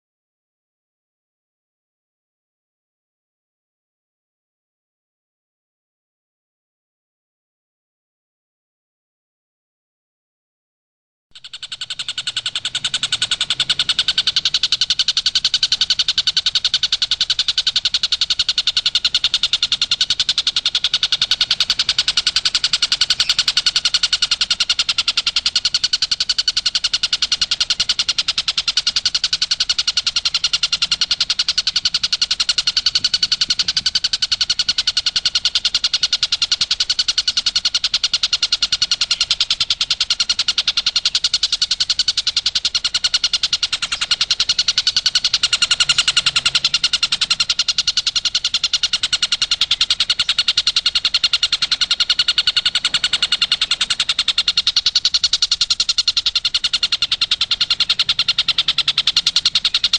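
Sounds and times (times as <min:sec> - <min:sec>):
kingfisher rapid high call: 0:11.7 - 0:37.3, 0:38.2 - 0:59.9.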